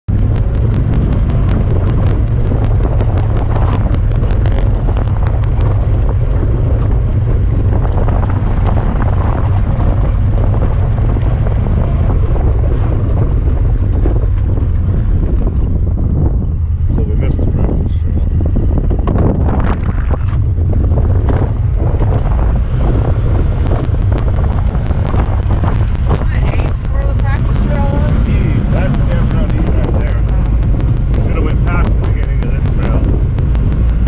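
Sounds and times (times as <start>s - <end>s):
fast even ticking: 0.0s - 14.3s, 22.2s - 34.0s
vehicle engine rumbling: 0.0s - 34.0s
wind noise on microphone: 0.0s - 34.0s.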